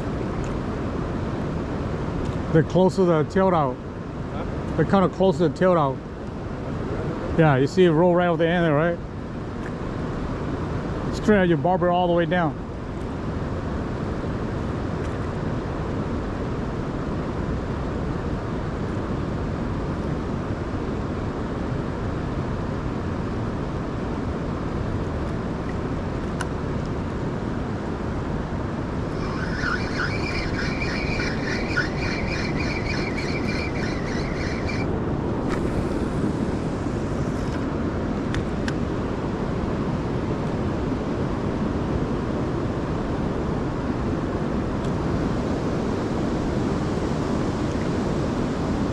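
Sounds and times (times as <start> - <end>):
river water rushing: 12.6 - 44.8
wind on microphone: 12.6 - 48.9
high rhythmic chattering: 29.1 - 34.8.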